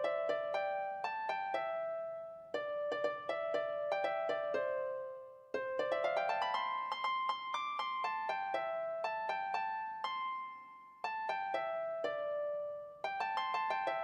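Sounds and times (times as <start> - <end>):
solo plucked string instrument melody: 0.0 - 14.0.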